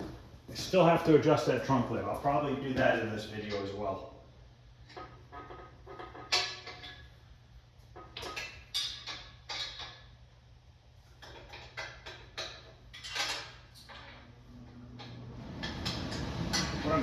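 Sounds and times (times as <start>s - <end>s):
metal clanks and clicks: 4.9s - 7.1s, 7.9s - 10.1s, 11.2s - 17.0s.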